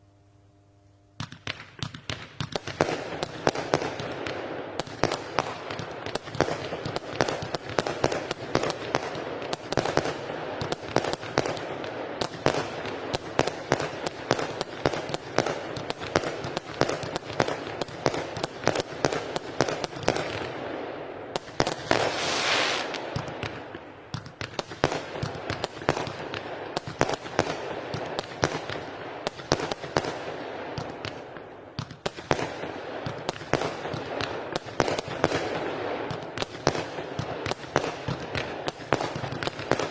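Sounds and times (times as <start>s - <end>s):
firework bangs: 21.4s - 31.2s
firework hissing: 21.8s - 23.2s.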